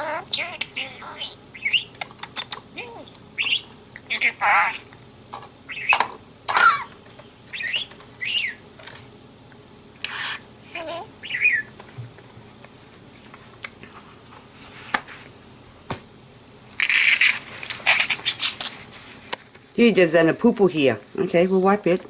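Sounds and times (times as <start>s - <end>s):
budgerigar chirping: 0.0s - 4.9s, 5.7s - 6.0s, 7.5s - 8.6s, 10.1s - 11.7s.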